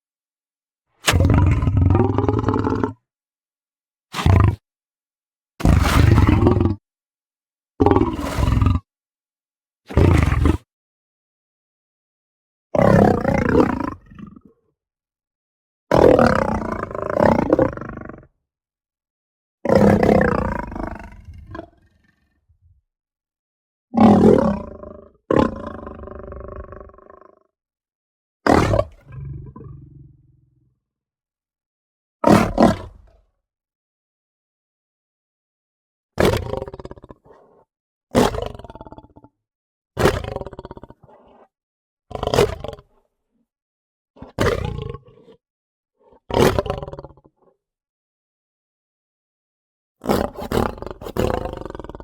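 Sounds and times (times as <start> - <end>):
lion roaring: 1.0 - 3.0, 4.2 - 4.6, 5.6 - 6.8, 7.8 - 8.9, 15.9 - 18.2, 19.7 - 21.8, 24.0 - 27.3, 38.2 - 39.2, 50.0 - 52.0.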